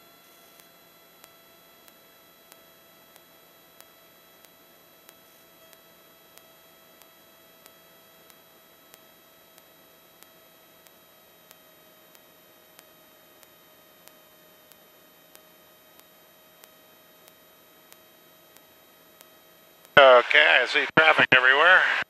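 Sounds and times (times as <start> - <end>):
faint regular tick: 0.6 - 20.0
steady thin whine: 19.6 - 22.0.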